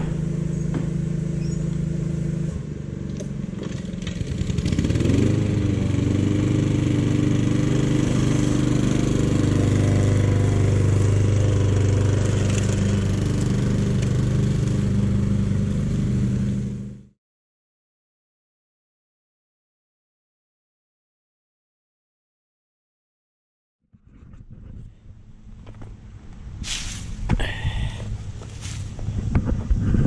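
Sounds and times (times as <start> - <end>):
lawn mower engine running: 0.0 - 17.1, 25.0 - 30.0.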